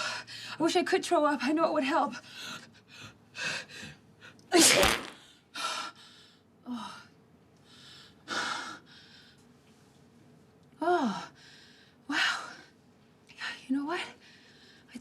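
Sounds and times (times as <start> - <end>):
woman sneezing: 4.5 - 5.2.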